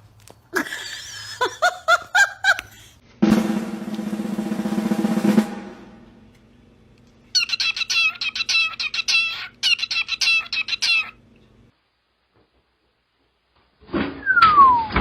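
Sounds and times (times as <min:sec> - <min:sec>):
bird chirping: 0:07.3 - 0:11.2.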